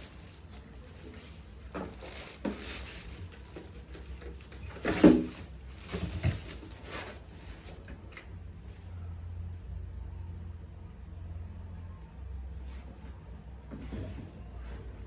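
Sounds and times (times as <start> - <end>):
packaging rustling and scraping: 0.0 - 7.9.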